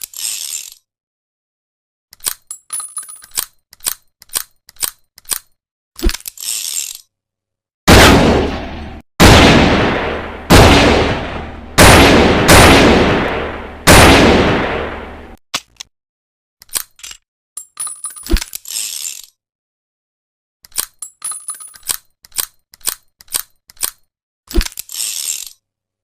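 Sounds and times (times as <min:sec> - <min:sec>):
metallic gun handling clicks: 0:02.1 - 0:07.0, 0:16.6 - 0:19.3, 0:20.6 - 0:25.6
loud echoing gunshots: 0:07.9 - 0:15.4.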